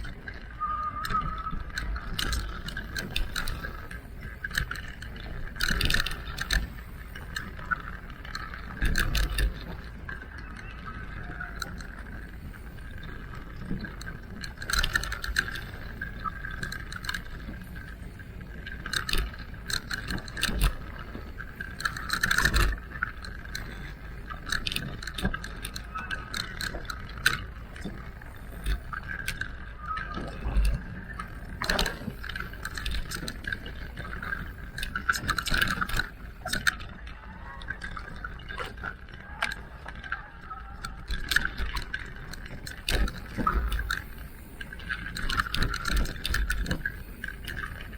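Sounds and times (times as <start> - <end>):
electric bike motor whine: 0.0 - 37.0, 41.3 - 47.9.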